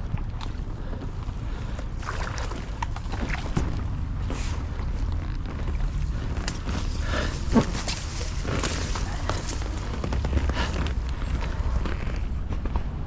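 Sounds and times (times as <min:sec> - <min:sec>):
paddle splashes and knocks: 0:00.0 - 0:04.0.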